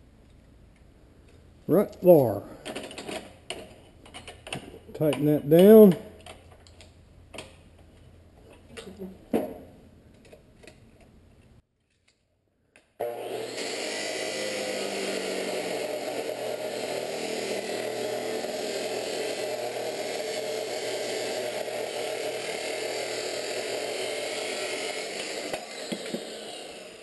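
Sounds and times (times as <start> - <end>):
tool clicks and knocks: 2.7 - 11.1
angle grinder cutting steel: 13.0 - 27.0.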